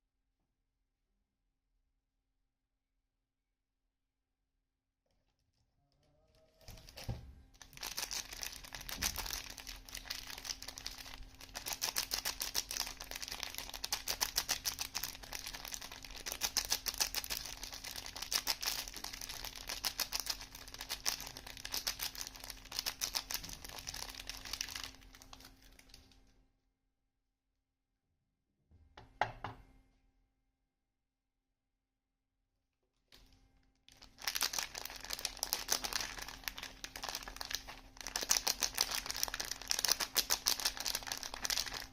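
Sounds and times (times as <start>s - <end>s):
packaging crinkling and rustling: 6.6s - 26.2s, 33.9s - 41.9s.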